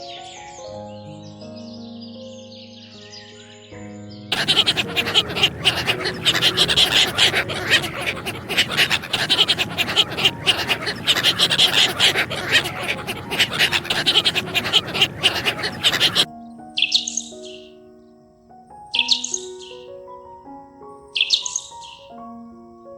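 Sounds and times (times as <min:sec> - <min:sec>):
quick breathy animal sounds: 0:04.3 - 0:16.3.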